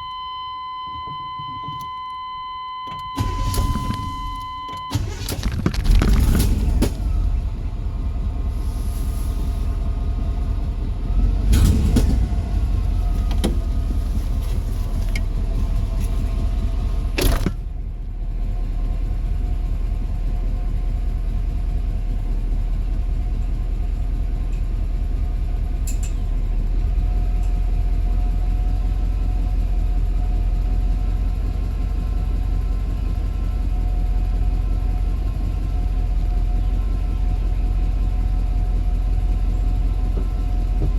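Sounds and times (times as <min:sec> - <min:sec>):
car engine idling: 0:02.9 - 0:40.9.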